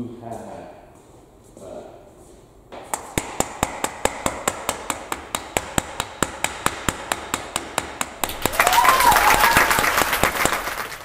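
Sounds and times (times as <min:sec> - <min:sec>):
applause or cheering: 0:08.3 - 0:11.0.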